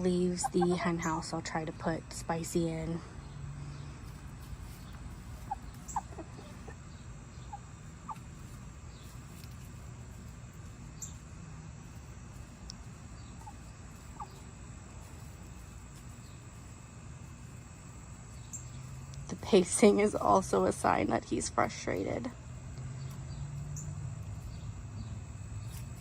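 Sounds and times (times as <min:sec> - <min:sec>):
chickens clucking: 0:00.0 - 0:02.6, 0:03.7 - 0:16.8
low background noise: 0:00.0 - 0:26.0.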